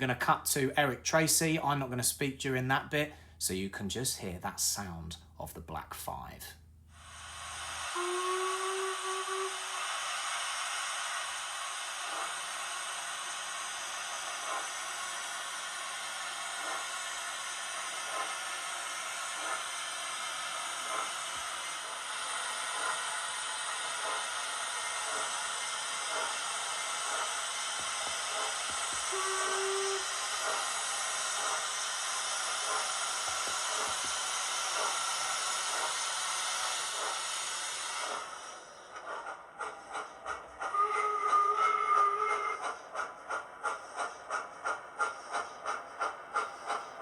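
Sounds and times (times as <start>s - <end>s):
steam hiss: 7.0s - 47.0s
steam locomotive exhaust chuffs: 7.0s - 47.0s
brief tone: 29.1s - 30.0s.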